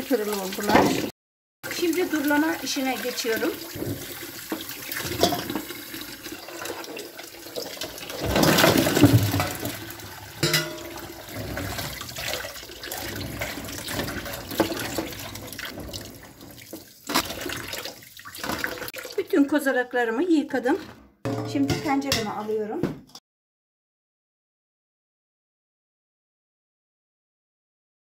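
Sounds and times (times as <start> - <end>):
water splashing and running: 0.0 - 19.5.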